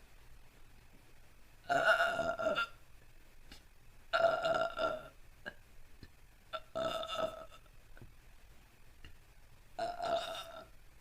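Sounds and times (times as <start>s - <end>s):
woman burping loudly: 1.7s - 2.8s, 4.1s - 5.6s, 6.6s - 7.7s, 9.8s - 10.7s.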